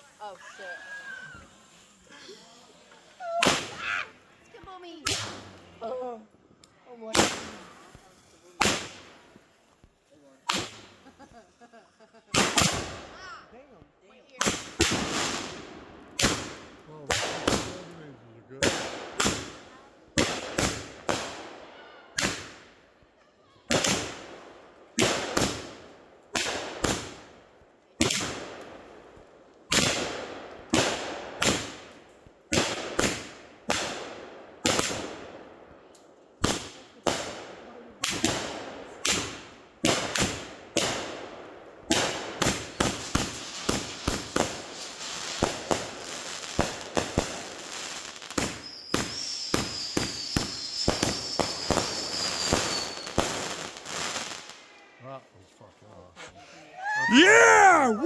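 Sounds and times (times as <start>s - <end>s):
fireworks crackling: 0.0s - 13.2s, 14.4s - 18.0s, 18.6s - 21.6s, 23.7s - 24.4s, 28.2s - 35.4s, 36.4s - 54.7s
fireworks bangs echoing: 7.1s - 9.5s, 12.4s - 13.1s, 36.4s - 54.4s.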